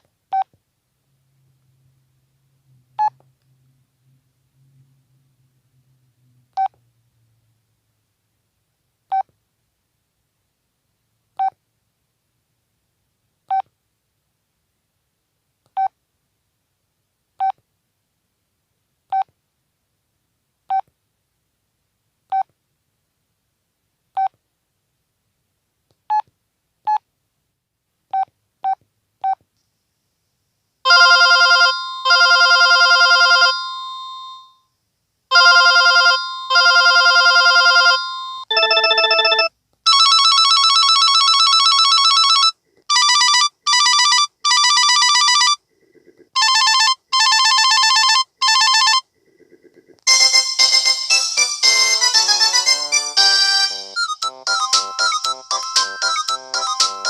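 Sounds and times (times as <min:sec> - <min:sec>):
phone ringtone: 0:30.9 - 0:34.5, 0:35.3 - 0:45.6, 0:46.4 - 0:49.0, 0:50.1 - 0:57.0.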